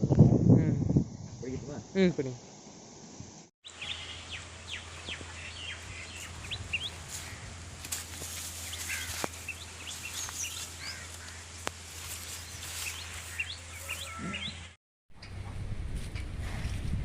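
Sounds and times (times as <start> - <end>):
birds chirping: 3.6 - 15.4.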